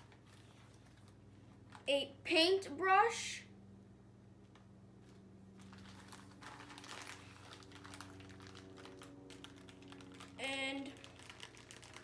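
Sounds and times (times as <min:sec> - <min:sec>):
clicking and rustling of packaging: 0:00.0 - 0:01.9, 0:04.5 - 0:12.0
steady low hum: 0:00.0 - 0:12.0.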